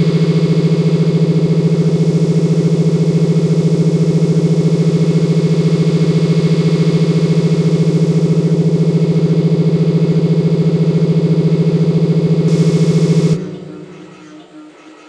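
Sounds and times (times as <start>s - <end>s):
loud pulsing low buzz: 0.0s - 15.0s.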